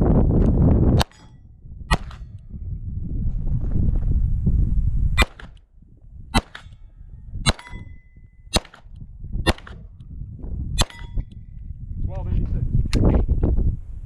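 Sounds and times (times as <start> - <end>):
pistol shots: 1.0 - 2.3, 5.2 - 5.6, 6.4 - 6.8, 7.5 - 7.9, 8.5 - 8.9, 9.5 - 9.9.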